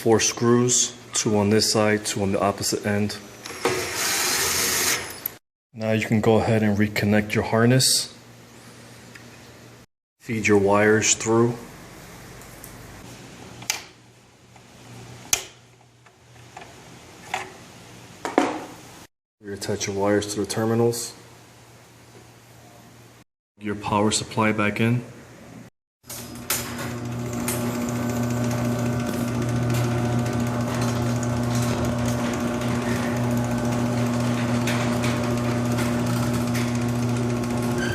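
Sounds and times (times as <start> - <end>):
garage door opener motor humming: 26.1 - 37.9.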